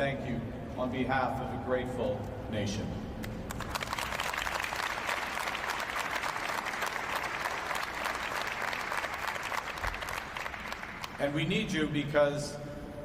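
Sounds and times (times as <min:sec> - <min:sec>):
audience applauding: 0:03.5 - 0:11.2.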